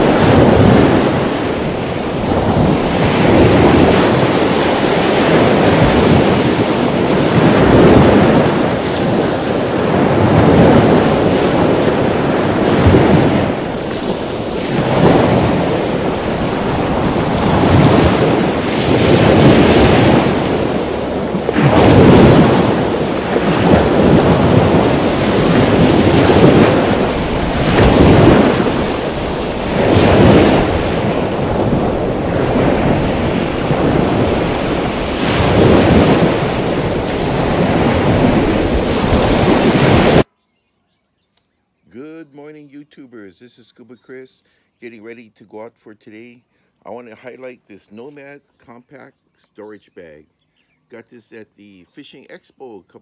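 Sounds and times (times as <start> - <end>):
ocean surf washing in: 0.0 - 40.3
wind buffeting microphone: 0.0 - 40.3.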